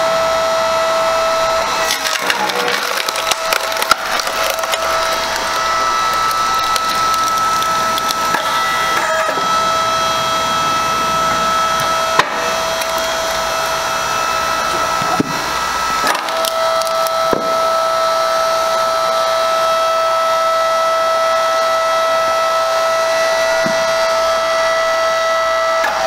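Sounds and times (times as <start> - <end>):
log splitter motor whining: 0.0 - 26.0
wood cracking and splintering: 1.7 - 9.5, 11.6 - 13.8, 16.0 - 17.7.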